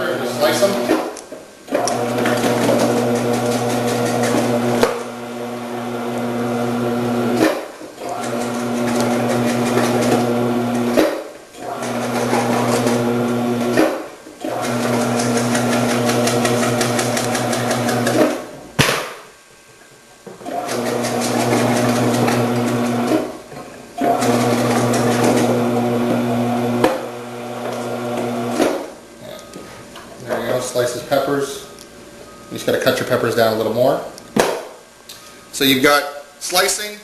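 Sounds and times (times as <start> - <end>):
vegetable processor motor humming: 1.7 - 7.4, 8.0 - 11.0, 11.6 - 13.8, 14.4 - 18.2, 20.4 - 23.3, 24.0 - 28.8.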